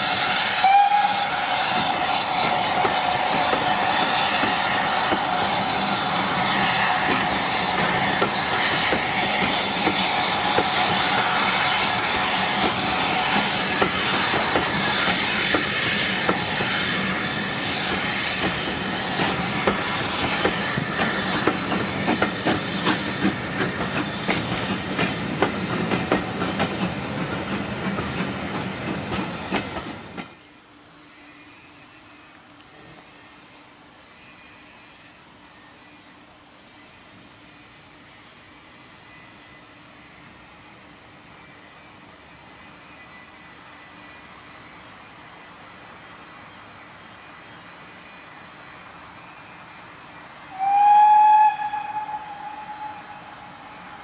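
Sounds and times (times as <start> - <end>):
steam train hiss: 0.0 - 54.0
train wheels clicking over rail joints: 1.4 - 30.4.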